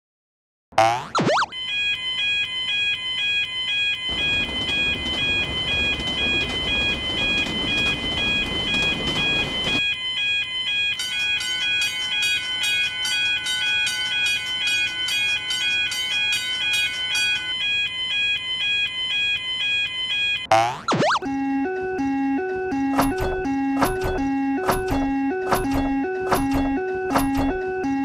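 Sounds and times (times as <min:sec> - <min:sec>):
two-tone crossing alarm ringing: 0:01.2 - 0:28.0
passing train rumble: 0:04.1 - 0:09.9.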